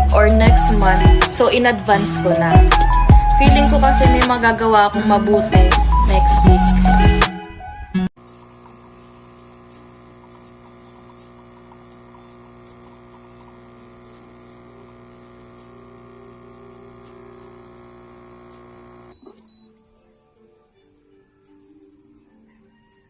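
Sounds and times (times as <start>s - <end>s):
coffee maker pump humming: 0.3s - 7.2s, 8.2s - 19.7s.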